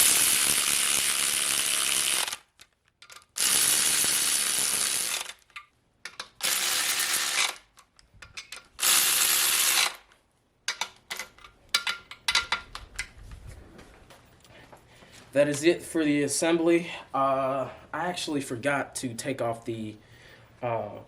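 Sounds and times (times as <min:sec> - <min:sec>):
power ratchet running: 0:00.0 - 0:02.5, 0:03.3 - 0:05.4, 0:06.4 - 0:07.6, 0:08.8 - 0:10.0.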